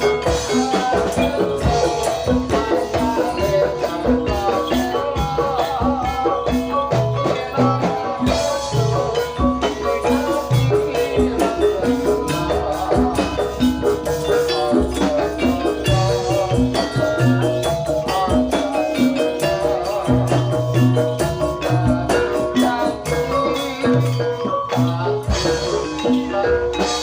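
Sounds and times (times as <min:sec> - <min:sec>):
steady low drum beat: 0:00.0 - 0:24.2
gamelan-style percussion: 0:00.0 - 0:27.0.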